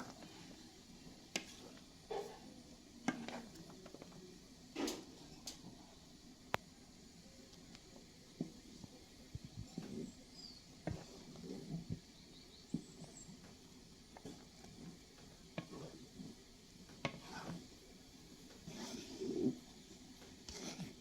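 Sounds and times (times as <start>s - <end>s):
spoon knocking and scraping in pot: 3.0s - 4.1s, 9.4s - 13.6s, 14.2s - 17.8s, 20.2s - 21.0s.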